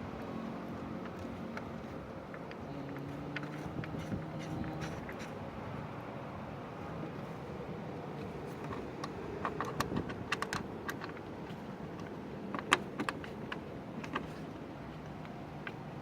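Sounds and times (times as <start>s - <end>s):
hand tools clicking and clinking: 1.0s - 5.4s.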